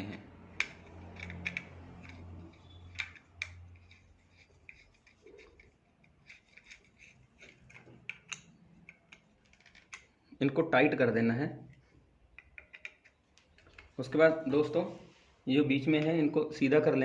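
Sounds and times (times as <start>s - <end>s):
nuts threaded on bolts: 0.0s - 10.4s, 11.7s - 14.0s.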